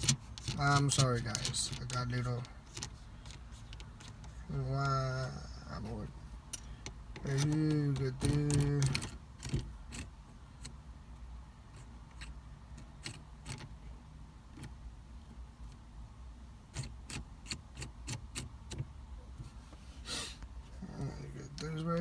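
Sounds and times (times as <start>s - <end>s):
small plastic parts clicking: 0.0s - 5.0s, 6.5s - 10.8s
steady low hum: 0.0s - 22.0s.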